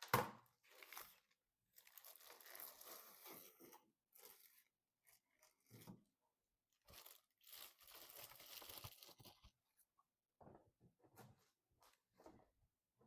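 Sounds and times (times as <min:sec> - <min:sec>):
packaging rustling and tearing: 0:00.7 - 0:03.5, 0:06.9 - 0:09.5.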